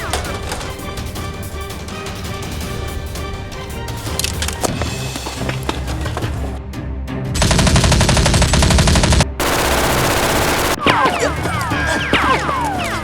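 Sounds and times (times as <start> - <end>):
background music: 0.0 - 13.0
automatic gunfire sound effect: 7.4 - 11.3.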